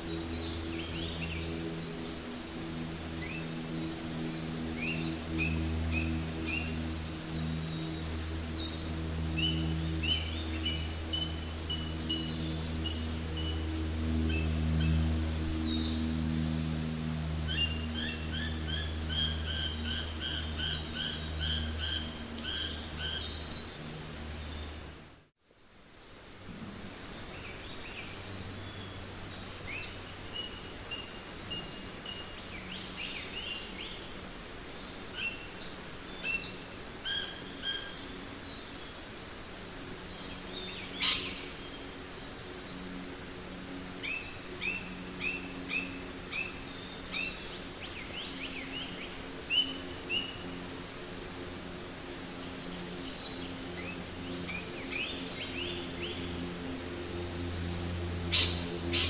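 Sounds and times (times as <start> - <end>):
low steady hum: 0.0 - 59.0
steady background hiss: 0.0 - 59.0
birds chirping and calling: 40.3 - 41.6, 57.6 - 59.0.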